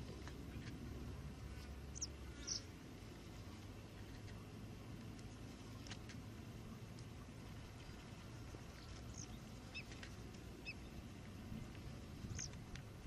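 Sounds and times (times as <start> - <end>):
low steady rumble: 0.0 - 13.0
birds chirping faintly: 0.2 - 5.9, 6.7 - 11.2, 12.0 - 12.7.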